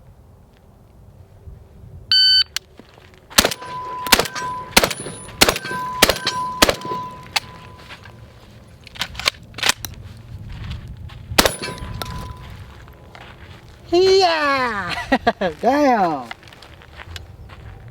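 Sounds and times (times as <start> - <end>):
short electronic beep: 2.1 - 2.6, 3.6 - 8.2
shotgun shots: 3.4 - 7.6, 11.4 - 12.4
steel targets ringing: 3.4 - 8.3, 11.4 - 12.7.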